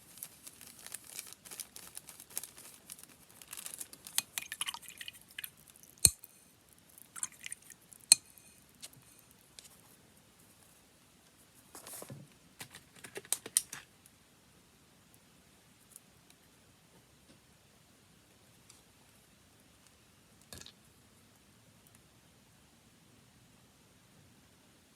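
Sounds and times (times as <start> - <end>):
paper rustling and crinkling: 0.0 - 4.2, 11.6 - 13.9.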